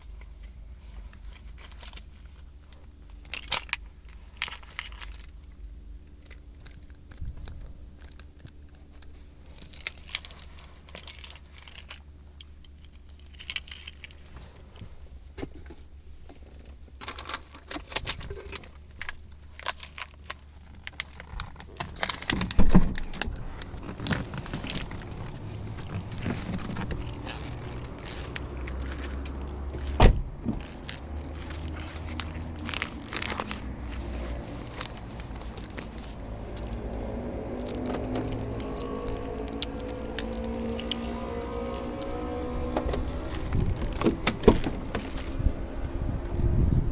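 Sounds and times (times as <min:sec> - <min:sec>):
metallic clinking and rattling: 0:00.0 - 0:14.7, 0:30.6 - 0:42.0
low rumble: 0:20.8 - 0:46.9.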